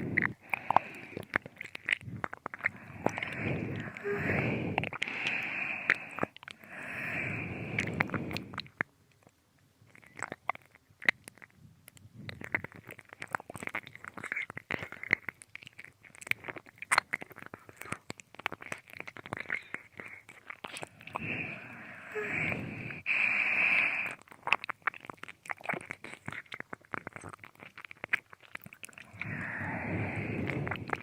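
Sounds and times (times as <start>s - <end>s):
breathy exhales: 0.0s - 1.6s, 2.6s - 8.6s, 20.8s - 24.2s, 29.0s - 31.0s
wet mouth licking sounds: 0.0s - 9.3s, 9.9s - 31.0s.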